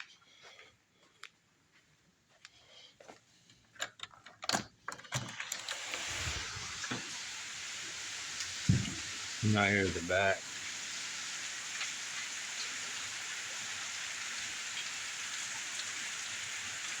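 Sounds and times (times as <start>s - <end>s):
heavy rain hissing: 5.6s - 17.0s.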